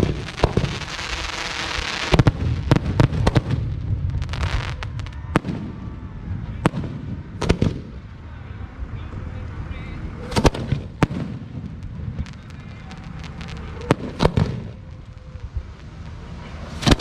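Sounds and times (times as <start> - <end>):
fireworks bangs: 0.0 - 8.4, 9.0 - 17.0
crackling hiss: 0.0 - 17.0
low rumble: 0.0 - 17.0.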